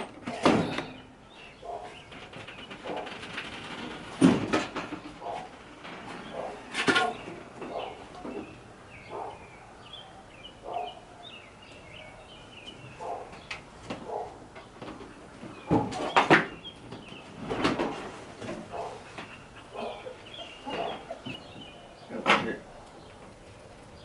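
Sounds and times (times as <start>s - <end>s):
parts knocking and clattering: 0.0s - 1.1s, 1.9s - 8.5s, 13.4s - 20.0s
small birds chirping: 0.6s - 3.4s, 6.1s - 17.5s, 18.3s - 24.0s.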